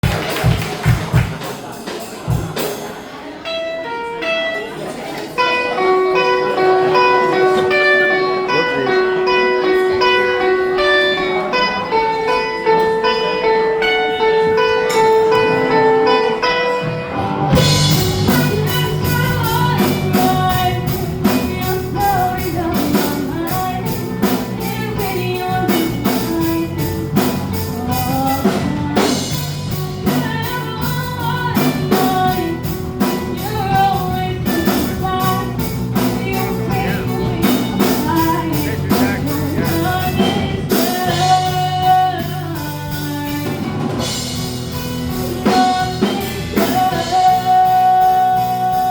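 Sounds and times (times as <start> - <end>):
drums and bass: 0.0 - 3.5, 14.3 - 48.9
electric guitar: 0.0 - 48.9
person singing: 5.4 - 48.9.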